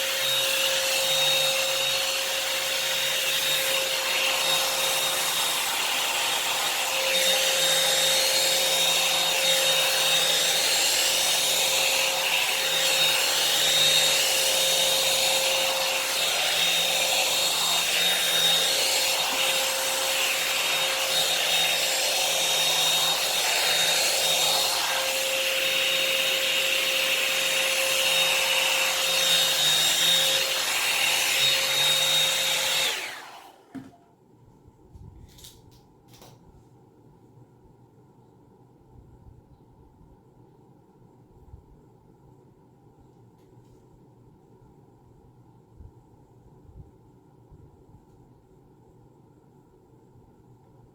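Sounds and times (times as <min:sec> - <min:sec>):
hot-air brush motor whine: 0:00.0 - 0:33.9.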